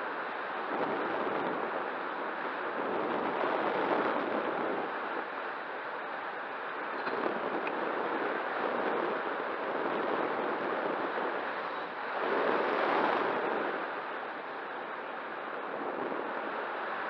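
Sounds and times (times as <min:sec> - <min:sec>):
wind noise on microphone: 0:00.0 - 0:17.0.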